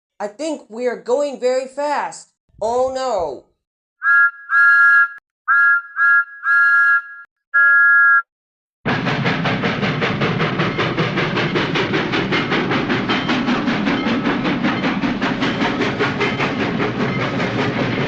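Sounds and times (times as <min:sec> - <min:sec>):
steam locomotive chuffing: 0:08.9 - 0:18.0.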